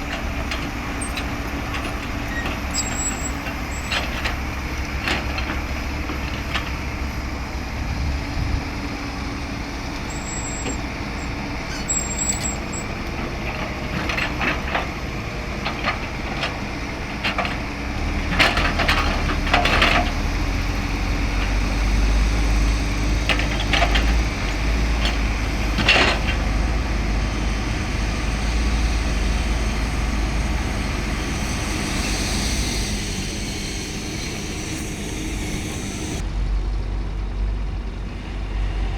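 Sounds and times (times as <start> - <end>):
diesel machinery engine drone: 0.0 - 38.9
knocks and clanks: 23.2 - 26.6.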